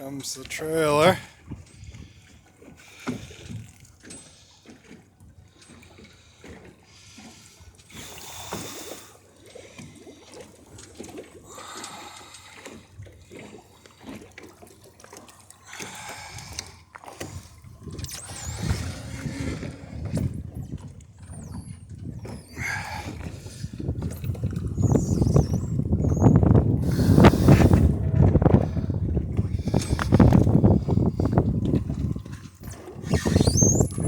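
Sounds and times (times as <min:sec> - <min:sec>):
water splashing around boat: 0:00.0 - 0:34.0
heavy low thumps: 0:21.9 - 0:32.2.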